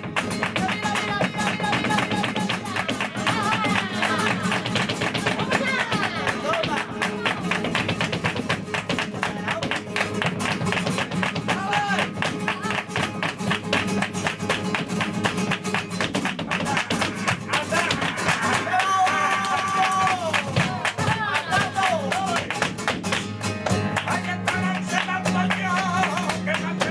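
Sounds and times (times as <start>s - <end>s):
flamenco guitar playing: 0.0s - 26.9s
person singing: 0.4s - 8.0s, 16.4s - 22.5s.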